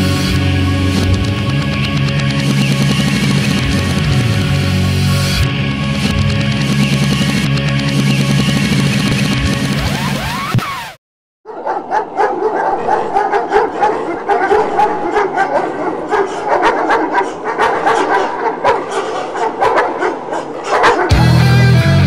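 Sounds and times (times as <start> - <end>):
dogs barking and yipping: 11.5 - 21.2.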